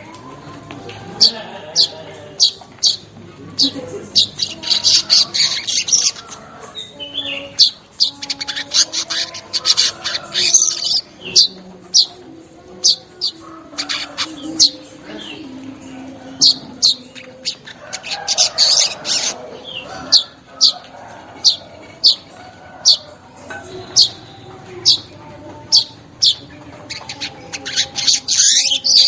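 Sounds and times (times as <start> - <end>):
bird chattering song: 1.2 - 29.0
bird chirps: 3.6 - 12.2, 23.9 - 25.1.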